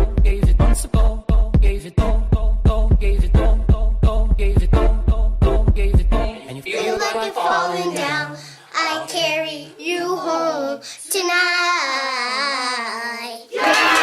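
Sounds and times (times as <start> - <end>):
high voice singing: 6.2 - 10.4.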